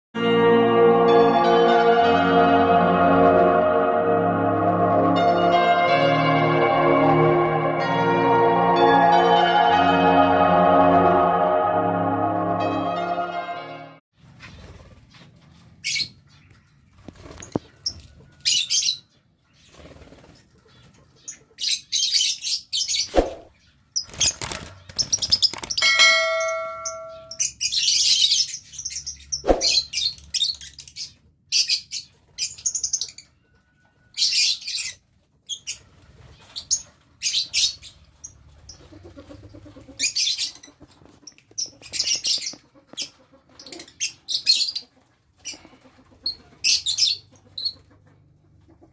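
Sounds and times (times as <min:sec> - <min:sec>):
birds chirping and screeching: 0:27.2 - 0:33.4, 0:34.1 - 0:47.8.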